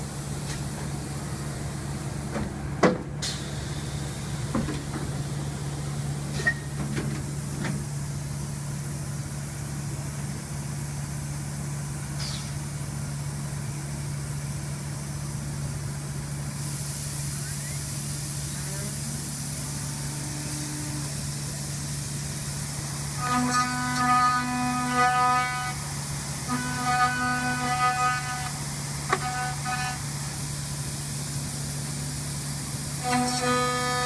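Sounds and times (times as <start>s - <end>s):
milling machine humming: 17.6s - 34.0s.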